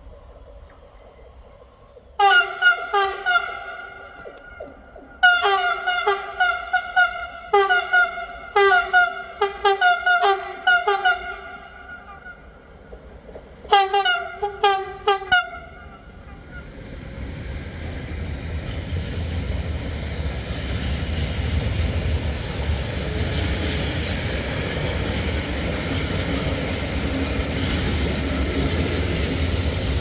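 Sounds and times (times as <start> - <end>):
railway warning bell ringing: 0.0 - 12.8.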